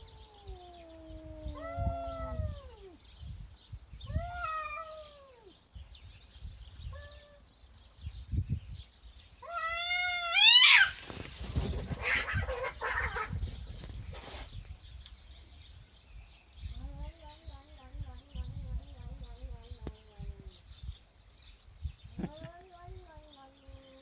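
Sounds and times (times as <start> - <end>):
cat meowing: 0.0 - 3.0, 4.1 - 5.5, 6.9 - 7.4, 9.4 - 11.0, 12.0 - 13.3
cat yowling: 0.0 - 3.0, 4.1 - 5.5, 6.9 - 7.4, 9.4 - 11.0, 12.0 - 13.3.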